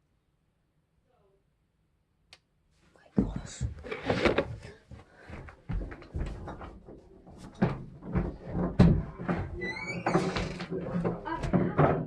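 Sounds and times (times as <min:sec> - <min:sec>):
irregular knocks and thumps: 0:03.2 - 0:12.0.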